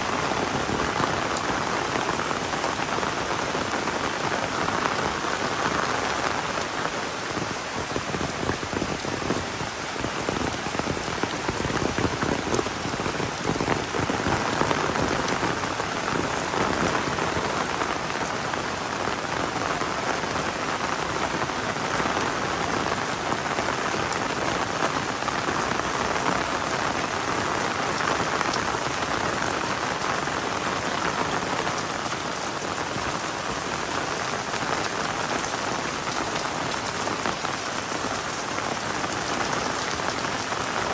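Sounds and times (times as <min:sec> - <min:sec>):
heavy rain falling: 0:00.0 - 0:40.9.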